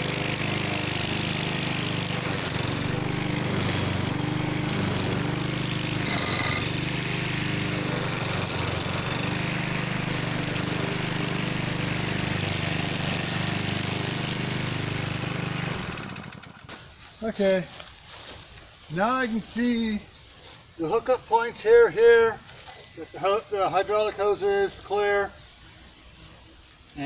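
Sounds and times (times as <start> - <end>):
string trimmer engine running: 0.0 - 17.6.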